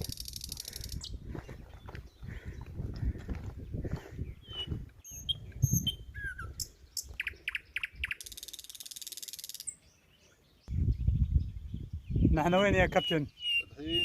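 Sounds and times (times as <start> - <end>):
small birds chirping: 0.0 - 14.0.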